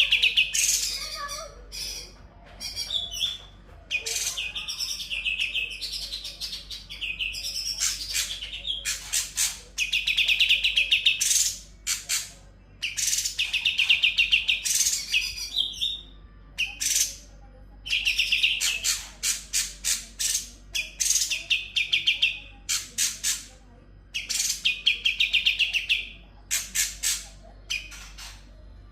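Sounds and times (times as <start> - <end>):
sharp high bird chips: 0.0 - 3.3.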